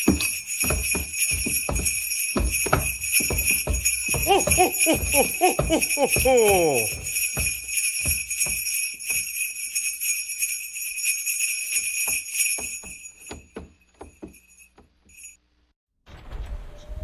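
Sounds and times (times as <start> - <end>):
footsteps on a roof: 0.0 - 9.5, 11.8 - 15.2
sleigh bells jingling: 0.0 - 15.4.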